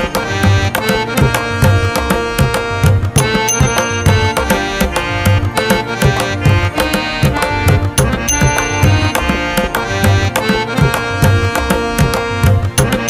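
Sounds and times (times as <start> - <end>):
hand drum beat: 0.0 - 13.0
sustained melodic notes: 0.0 - 13.0.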